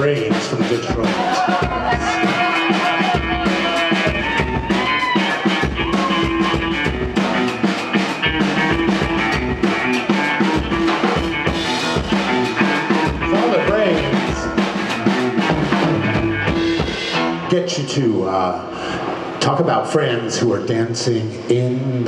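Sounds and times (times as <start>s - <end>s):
drum kit beat: 0.0s - 17.5s
electric guitar notes: 1.7s - 17.5s.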